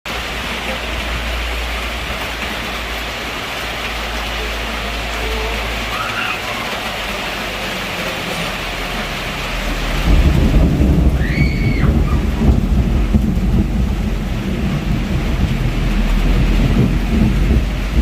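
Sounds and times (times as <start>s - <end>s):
heavy rain: 0.0s - 18.0s
thunder rumbling: 8.7s - 18.0s.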